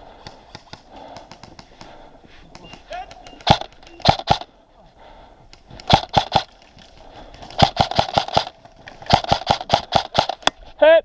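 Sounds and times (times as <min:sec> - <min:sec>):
airsoft gunshots: 0:02.5 - 0:04.5, 0:05.8 - 0:06.5, 0:07.4 - 0:10.5.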